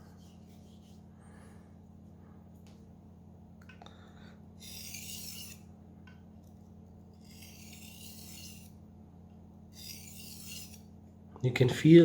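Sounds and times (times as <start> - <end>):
knife scraping on whetstone: 4.6 - 5.7, 7.1 - 8.8, 9.7 - 10.9.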